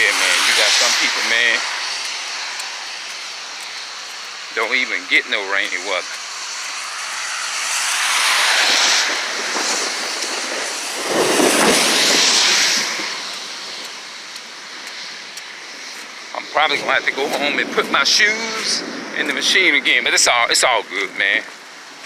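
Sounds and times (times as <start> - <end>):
tyres hissing on wet road: 0.0 - 22.0.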